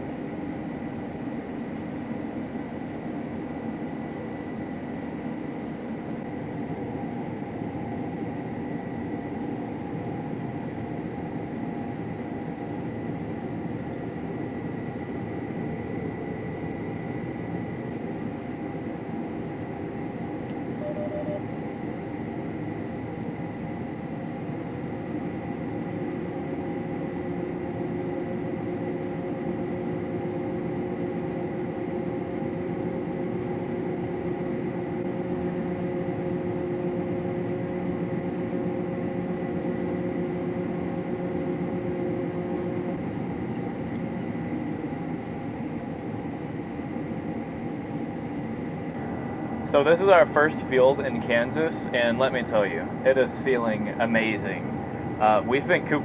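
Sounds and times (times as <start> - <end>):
combine harvester droning: 20.7 - 21.6, 48.7 - 56.0
faint high whine: 20.7 - 21.7.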